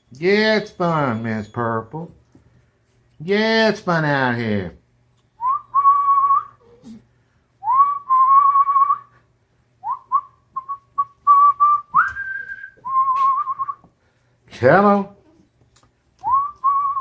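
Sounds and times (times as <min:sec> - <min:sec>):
man whistling: 0:05.4 - 0:06.6, 0:07.6 - 0:09.2, 0:09.8 - 0:13.9, 0:16.2 - 0:17.0.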